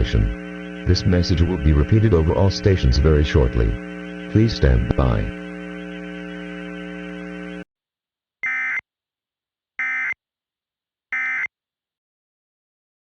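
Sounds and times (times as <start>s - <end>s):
low steady hum: 0.0s - 7.6s.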